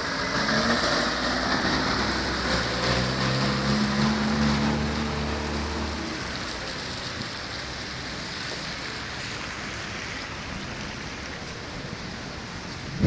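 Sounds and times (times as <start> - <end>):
heavy rain hissing: 0.0 - 13.0
vehicle engine: 0.0 - 13.0.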